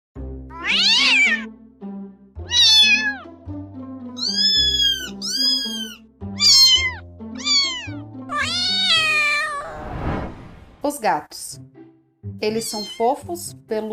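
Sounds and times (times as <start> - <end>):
background music: 0.2 - 13.9
cat meowing: 0.5 - 1.5, 2.4 - 3.3, 4.2 - 9.8, 12.6 - 13.2.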